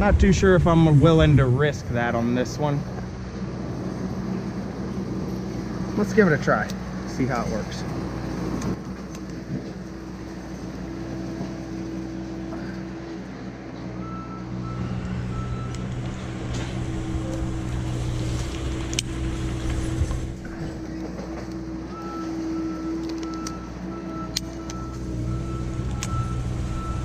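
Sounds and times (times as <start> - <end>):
engine running: 0.0 - 27.0
sharp clicks: 25.8 - 26.3.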